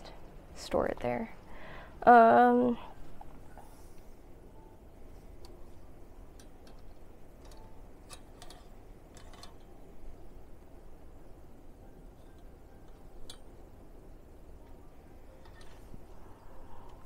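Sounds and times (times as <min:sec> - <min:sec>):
low steady hum: 0:00.0 - 0:17.0
small objects clicking and tapping: 0:06.3 - 0:09.8, 0:12.2 - 0:13.6.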